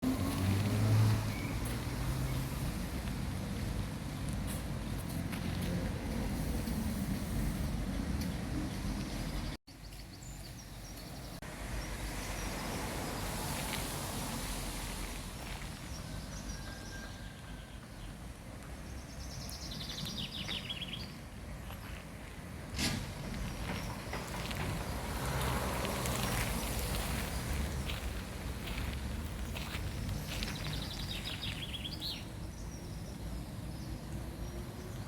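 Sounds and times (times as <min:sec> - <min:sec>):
songbirds singing: 0:08.2 - 0:13.5, 0:15.7 - 0:22.0, 0:23.2 - 0:35.0
low outdoor rumble: 0:21.2 - 0:35.0.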